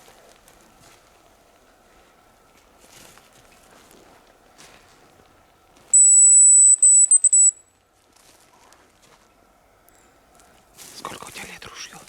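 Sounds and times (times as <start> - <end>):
faint rustle: 0.0 - 6.0, 7.8 - 12.0
high decoy whistle: 6.0 - 7.6.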